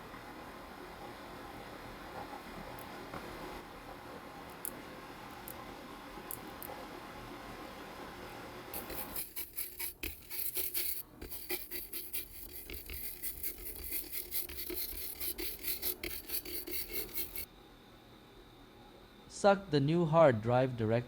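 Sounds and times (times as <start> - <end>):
brush scrubbing circuit board: 8.8 - 17.5.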